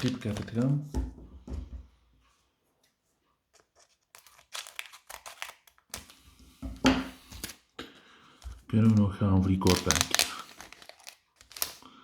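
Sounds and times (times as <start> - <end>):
wrapper tearing and crinkling: 0.0 - 0.8, 3.8 - 6.2, 8.7 - 12.0.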